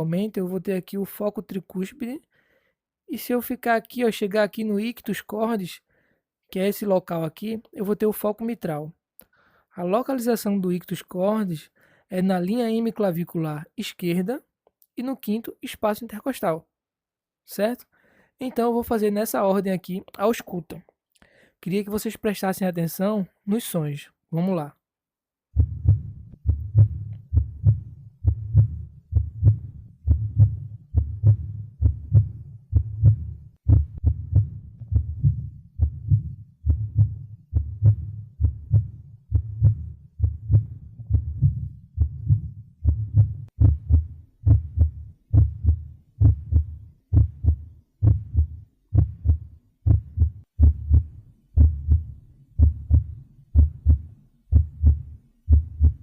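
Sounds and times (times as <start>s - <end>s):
heartbeat through stethoscope: 25.6s - 56.0s.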